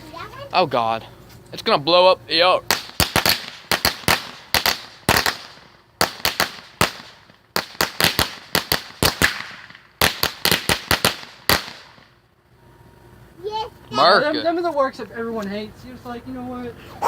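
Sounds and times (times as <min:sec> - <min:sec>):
fireworks banging: 0:02.6 - 0:12.2.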